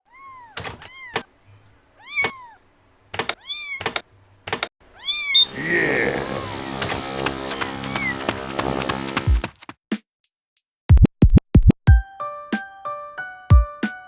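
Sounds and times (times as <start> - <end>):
cat meowing: 2.0 - 2.6, 3.4 - 3.8, 4.9 - 5.8
music: 6.2 - 14.0.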